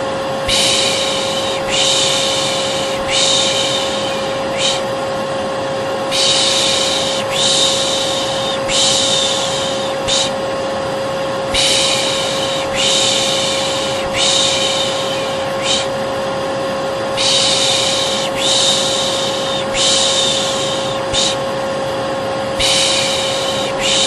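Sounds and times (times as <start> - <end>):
vacuum cleaner humming: 0.0 - 24.0
person shushing: 0.4 - 5.0, 6.1 - 10.4, 11.5 - 16.0, 17.2 - 21.5, 22.6 - 24.0.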